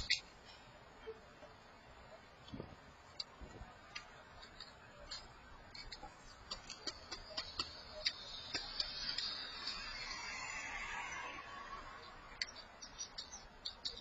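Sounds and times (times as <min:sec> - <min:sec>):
birds pecking at seed: 0:03.9 - 0:10.8, 0:11.4 - 0:14.0.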